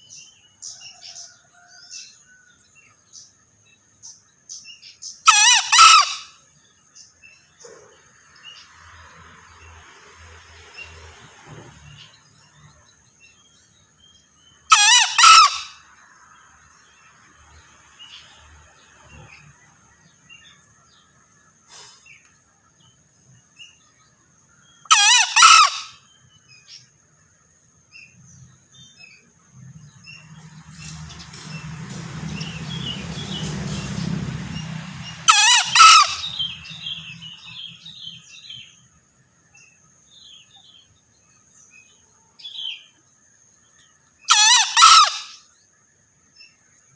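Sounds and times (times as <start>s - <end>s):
junglefowl crowing: 5.2s - 6.4s, 14.7s - 16.0s, 24.8s - 26.1s, 35.1s - 37.2s, 44.3s - 45.4s
rushing noise with low rumble: 29.4s - 38.2s.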